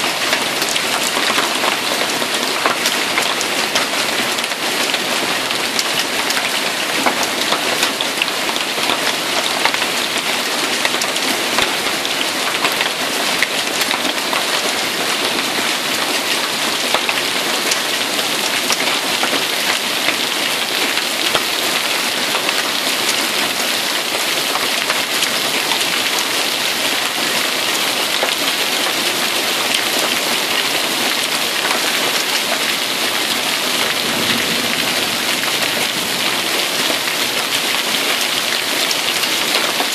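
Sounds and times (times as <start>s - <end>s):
hail strikes ticking: 16.9s - 23.1s.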